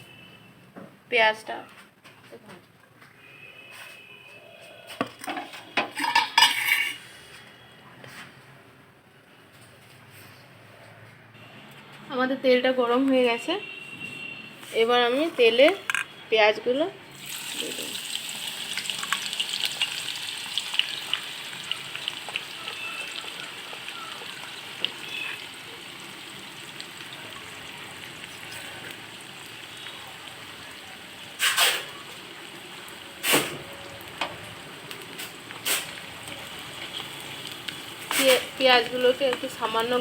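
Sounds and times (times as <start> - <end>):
onions sizzling in oil: 17.1 - 40.0.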